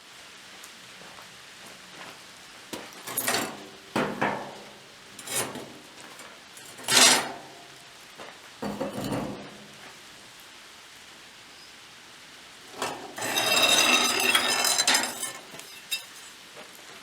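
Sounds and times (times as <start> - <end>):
hard knocks and clatters: 3.1 - 5.8.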